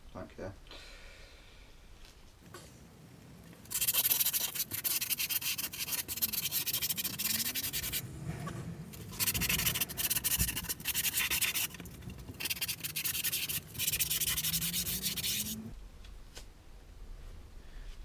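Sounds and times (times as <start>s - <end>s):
file rasping on grip tape: 2.8s - 15.7s.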